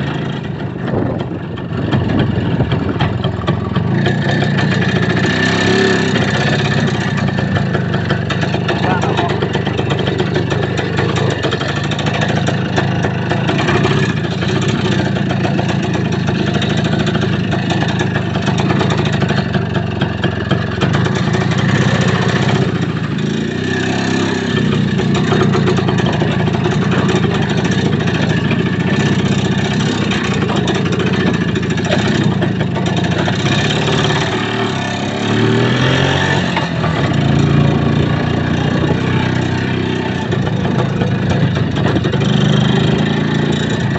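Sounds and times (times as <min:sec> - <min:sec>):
road noise: 0:00.0 - 0:43.9
vehicle engine running: 0:00.0 - 0:43.9
rattle: 0:00.2 - 0:35.2.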